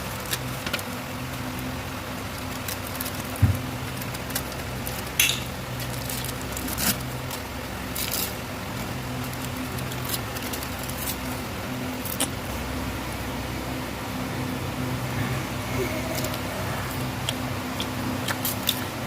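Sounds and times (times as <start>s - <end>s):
steady low hum: 0.0s - 19.0s
wrapper crinkling and tearing: 2.3s - 11.4s.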